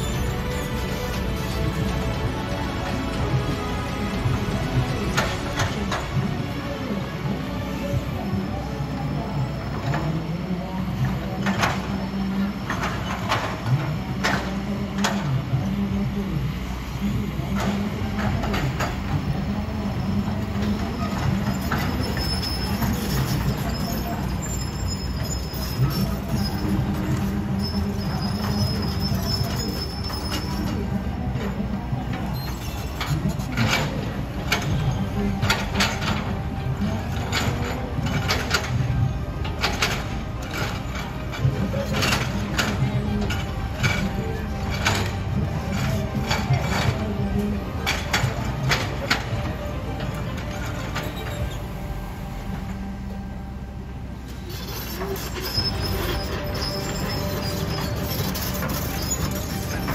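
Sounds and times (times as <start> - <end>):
high metallic squeal: 0.0 - 2.5, 20.1 - 31.0, 32.3 - 33.9, 50.0 - 52.2, 54.3 - 59.9
excavator diesel engine running: 0.0 - 59.9.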